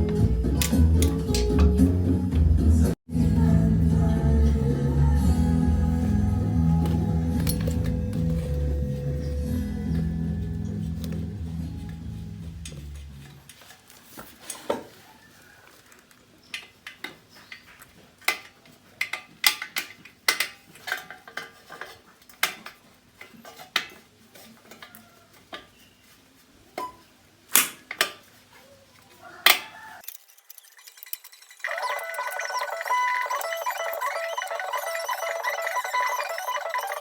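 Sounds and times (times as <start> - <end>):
metal tools clinking: 6.8 - 10.0, 30.0 - 33.0.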